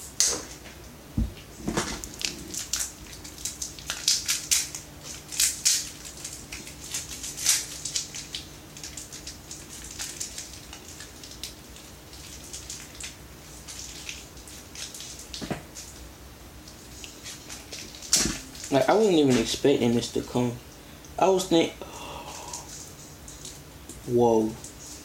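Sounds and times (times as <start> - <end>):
dull knock: 1.2 - 1.4
toy packaging crinkling: 2.1 - 11.5.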